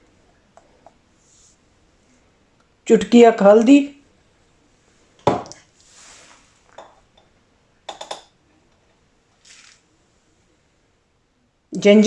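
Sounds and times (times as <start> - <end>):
soft rustle: 4.7 - 6.8, 9.3 - 10.6
spoon clinking against dishes: 7.9 - 8.4.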